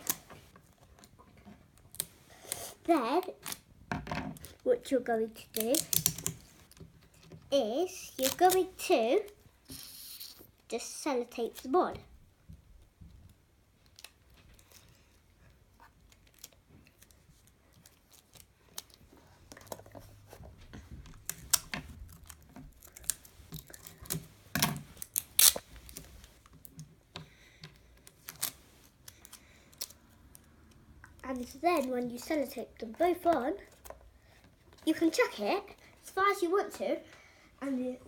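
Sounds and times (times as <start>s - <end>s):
sticky tape pulled and torn: 0.0s - 0.4s, 1.8s - 3.6s, 5.5s - 6.8s, 8.1s - 10.5s, 21.2s - 26.5s, 28.0s - 30.5s.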